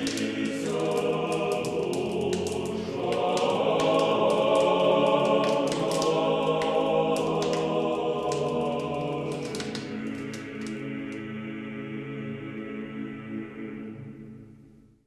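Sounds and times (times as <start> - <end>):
choir singing slow chords: 0.0 - 15.0.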